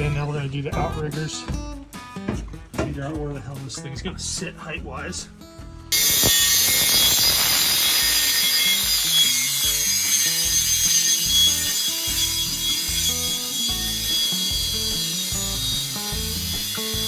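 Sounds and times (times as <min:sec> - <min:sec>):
background music: 0:00.0 - 0:06.2, 0:08.4 - 0:17.0
power tool cutting steel tubing: 0:05.9 - 0:17.0.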